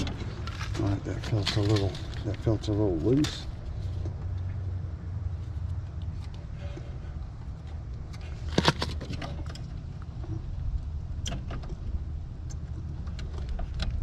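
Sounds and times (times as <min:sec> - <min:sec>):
steady low rumble: 0:00.0 - 0:14.0.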